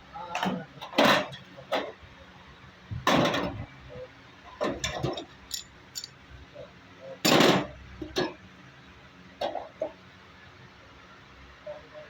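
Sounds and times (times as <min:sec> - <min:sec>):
hard tools clinking and knocking: 0:04.6 - 0:06.2.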